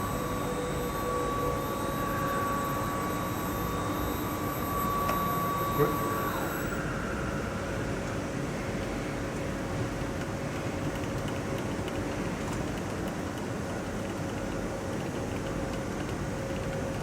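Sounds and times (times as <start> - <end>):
drilling machine humming: 0.0 - 6.8.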